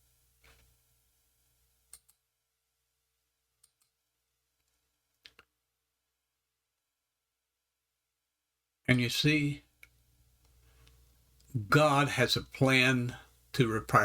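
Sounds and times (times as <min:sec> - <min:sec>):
faint sharp clicks: 0:01.9 - 0:02.2, 0:03.6 - 0:04.0.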